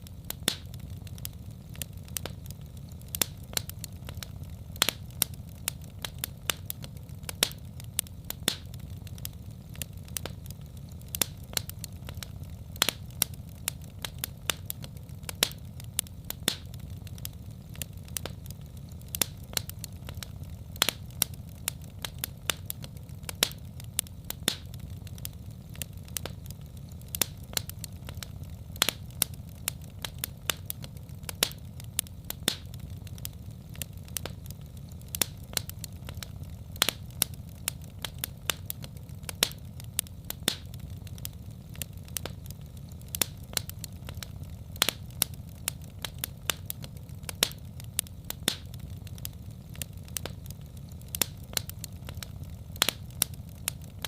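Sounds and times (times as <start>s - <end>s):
fire crackling and popping: 0.0s - 54.0s.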